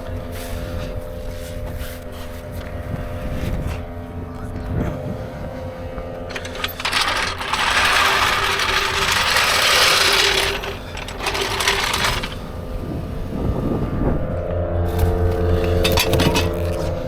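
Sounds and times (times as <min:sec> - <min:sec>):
impact wrench rattling: 0:06.3 - 0:13.3.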